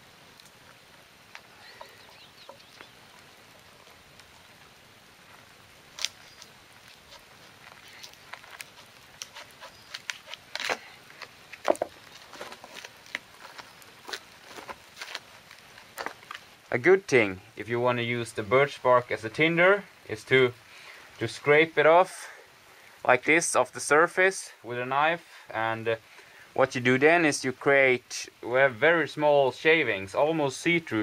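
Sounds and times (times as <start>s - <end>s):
faint steady hiss: 0.0s - 31.0s
bark cracking and snapping: 5.8s - 16.5s.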